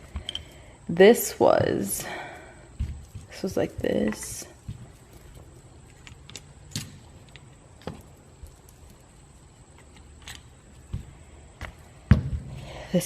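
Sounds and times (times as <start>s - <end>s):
small parts clicking and knocking: 0.0s - 0.7s, 2.8s - 11.0s
low steady hum: 0.0s - 13.0s.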